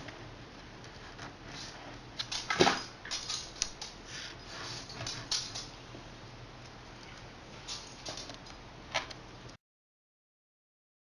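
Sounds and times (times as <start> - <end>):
metal tools clicking and scraping: 2.2 - 4.0, 4.7 - 5.7, 7.7 - 8.4.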